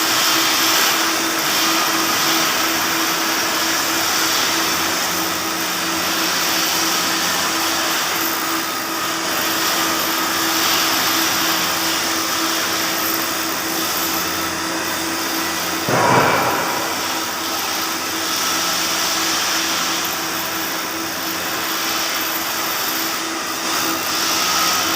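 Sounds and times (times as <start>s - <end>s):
welding arc hiss and crackle: 0.0s - 24.9s
brief rush of noise: 15.9s - 17.8s.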